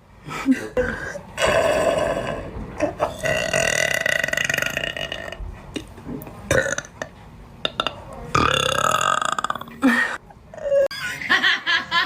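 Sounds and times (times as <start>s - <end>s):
woman burping: 7.7s - 10.9s.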